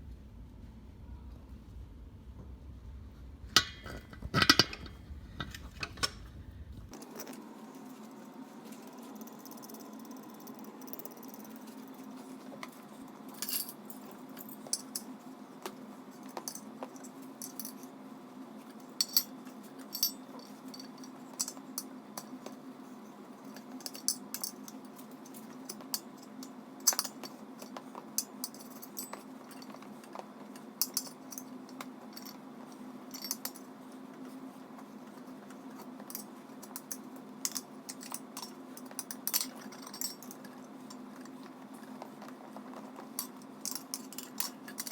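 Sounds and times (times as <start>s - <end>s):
steady low hum: 0.0s - 16.6s
metal tire spoons clinking on rim: 3.6s - 6.2s, 36.1s - 40.4s.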